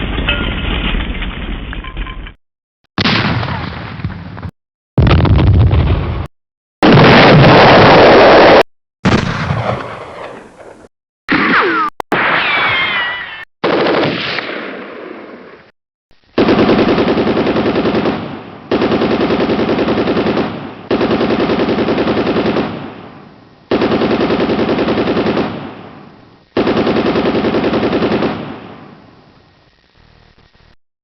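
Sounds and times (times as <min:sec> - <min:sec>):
machine gun automatic fire: 0:16.4 - 0:23.1, 0:23.7 - 0:29.0.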